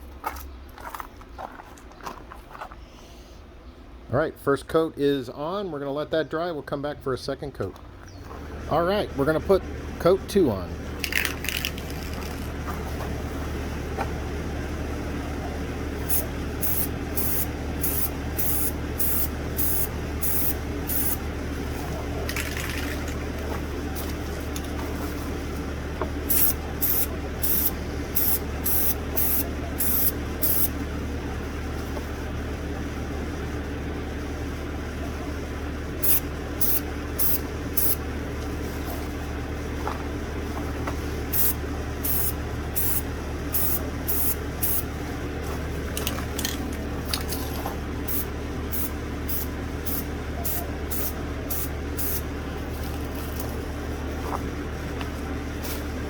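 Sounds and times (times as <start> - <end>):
steady low hum: 0.0 - 56.0
spray paint can bursts: 11.0 - 12.5, 16.1 - 21.2, 22.3 - 23.2, 26.3 - 30.7, 36.0 - 38.0, 41.4 - 43.0, 43.6 - 44.8, 48.1 - 52.2.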